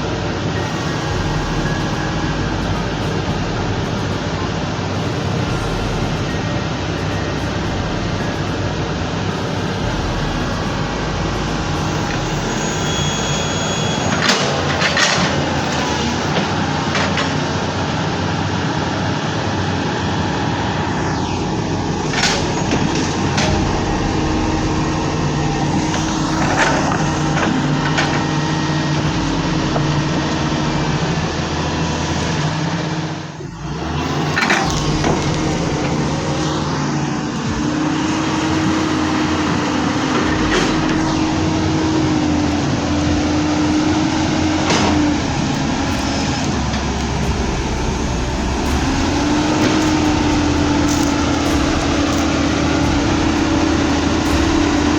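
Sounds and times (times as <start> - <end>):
excavator diesel engine running: 0.0 - 54.9
machine knocks and clanks: 33.6 - 54.9.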